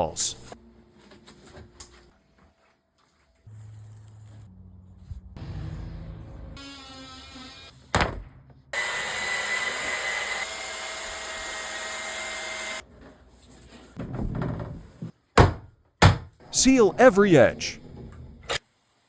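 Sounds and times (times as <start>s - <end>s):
power tool running: 8.8s - 12.8s
sharp knocks: 15.4s - 16.4s.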